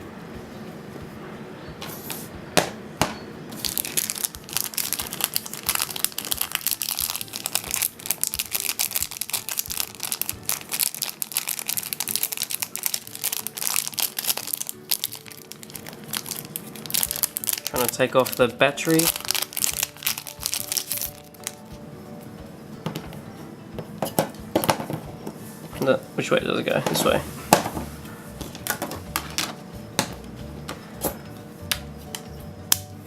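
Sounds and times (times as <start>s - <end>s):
plastic wrapping crinkling: 3.5s - 23.1s, 24.0s - 25.9s, 26.6s - 30.2s.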